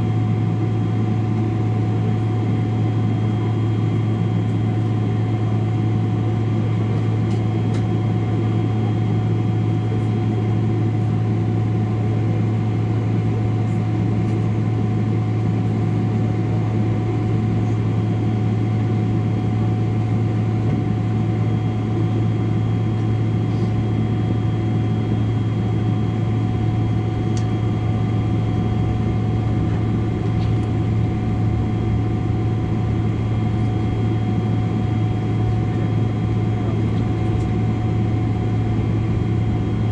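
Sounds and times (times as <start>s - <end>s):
airliner cabin drone: 0.0s - 39.9s
high steady whining tones: 25.0s - 39.9s.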